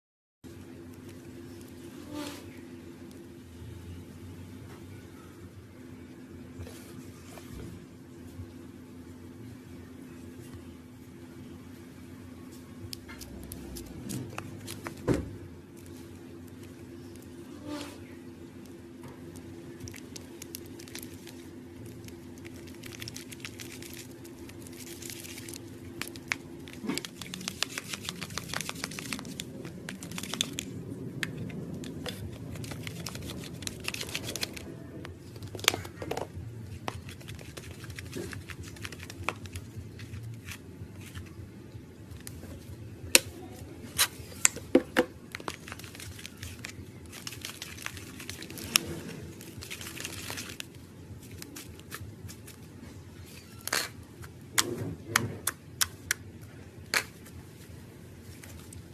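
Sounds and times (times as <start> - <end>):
steady low hum: 0.4 - 58.9
crinkling handling noise: 12.5 - 17.8, 18.6 - 54.9, 56.5 - 58.9.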